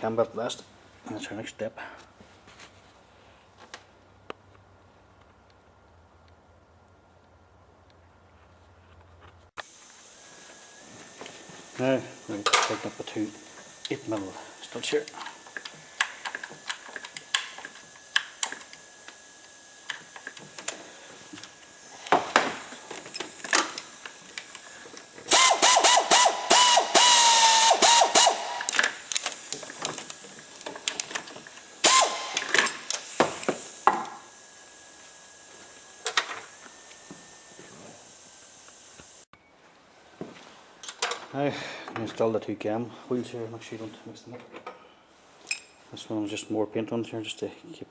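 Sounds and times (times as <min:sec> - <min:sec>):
ratchet wrench clicking and whining: 0:10.8 - 0:39.3.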